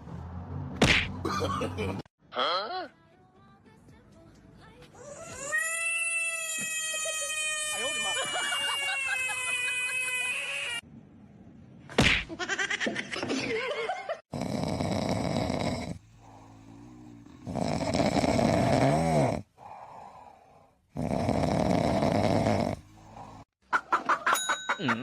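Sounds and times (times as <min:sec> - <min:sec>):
person snoring loudly: 0:14.3 - 0:23.5.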